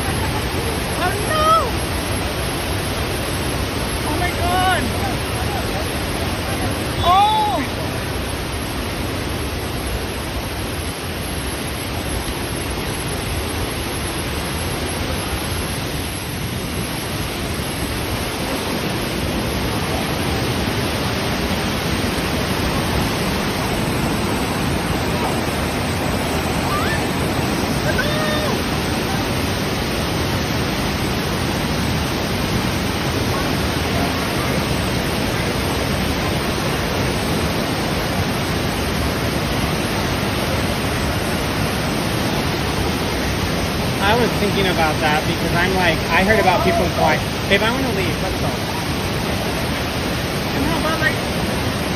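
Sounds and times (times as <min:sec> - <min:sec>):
faint voices: 0:00.0 - 0:08.4, 0:18.0 - 0:32.0, 0:33.0 - 0:51.3
rushing floodwater: 0:00.0 - 0:51.9.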